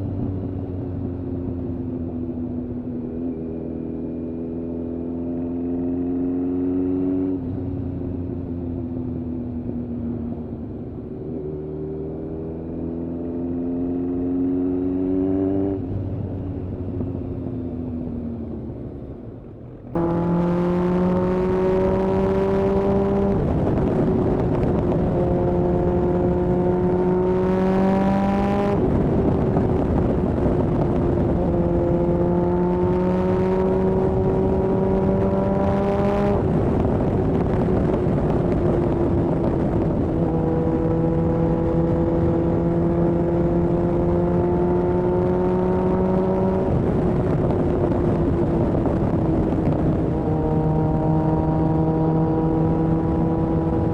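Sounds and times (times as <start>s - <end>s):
motorcycle engine running: 19.9s - 53.9s.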